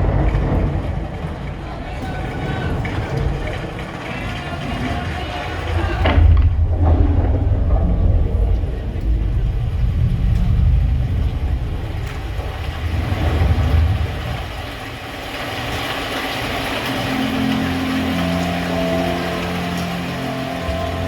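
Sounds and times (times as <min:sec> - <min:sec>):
deep vehicle engine rumble: 0:00.0 - 0:15.1
hissing wash: 0:00.0 - 0:21.0
held musical notes: 0:16.2 - 0:21.0.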